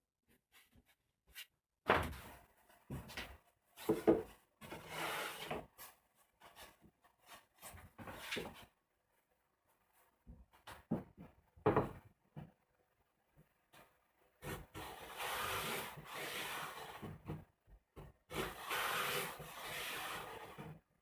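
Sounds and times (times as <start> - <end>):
wood scraping: 18.3 - 20.7.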